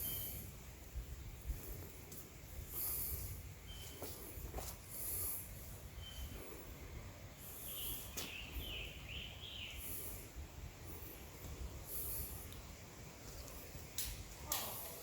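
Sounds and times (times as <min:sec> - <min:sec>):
soft high hissing bursts: 0:00.0 - 0:00.7, 0:04.8 - 0:12.9
low wind rumble: 0:00.0 - 0:15.0
bird chirping: 0:03.6 - 0:04.1, 0:06.0 - 0:06.4, 0:07.4 - 0:10.1.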